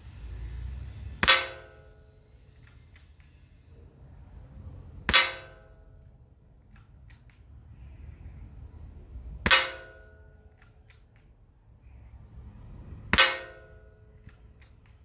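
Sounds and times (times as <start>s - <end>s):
air rifle shots: 5.0s - 5.7s, 13.1s - 15.0s.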